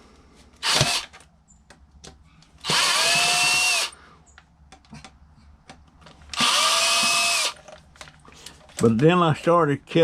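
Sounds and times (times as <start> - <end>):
cordless screw gun whining: 0.6 - 1.2, 2.6 - 4.0, 6.3 - 7.6.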